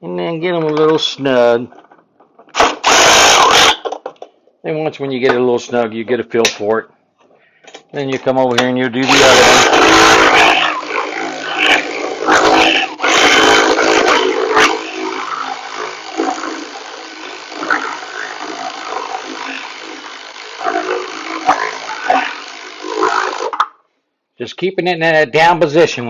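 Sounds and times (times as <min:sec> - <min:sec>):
power ratchet running: 0:02.5 - 0:03.9, 0:09.0 - 0:23.6.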